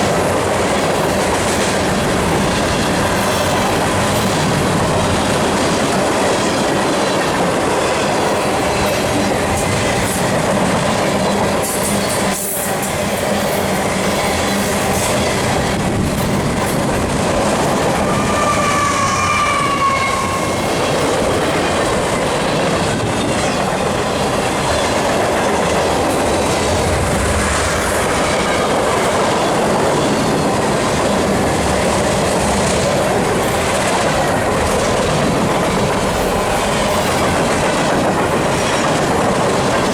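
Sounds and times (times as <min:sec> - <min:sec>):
steel wheels on rail: 0:00.0 - 0:39.9
high-pitched wheel squeal: 0:17.9 - 0:20.8.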